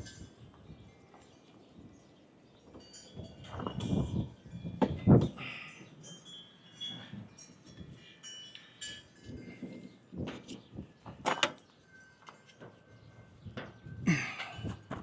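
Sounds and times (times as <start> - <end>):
faint high ringing tones: 2.4 - 9.9, 10.8 - 15.0.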